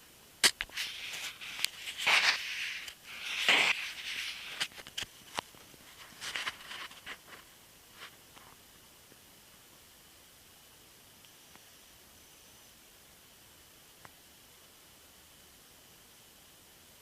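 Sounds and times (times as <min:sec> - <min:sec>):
short hissing bursts: 0:00.0 - 0:04.9.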